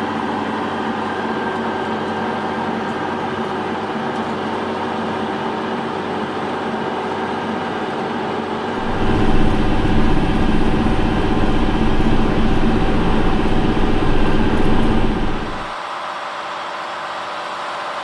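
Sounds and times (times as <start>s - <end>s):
diesel engine droning: 8.8s - 15.7s.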